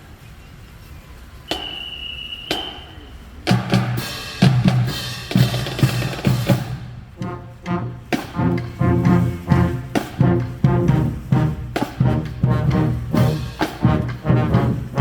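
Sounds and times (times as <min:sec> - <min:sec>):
bass and snare drums cadence: 0:01.4 - 0:15.0
high whistle blast: 0:01.5 - 0:03.3
brass instruments: 0:01.7 - 0:15.0.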